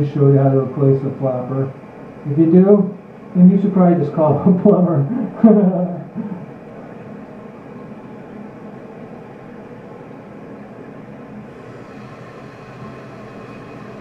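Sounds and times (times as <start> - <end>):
toilet tank refilling: 11.5 - 14.0.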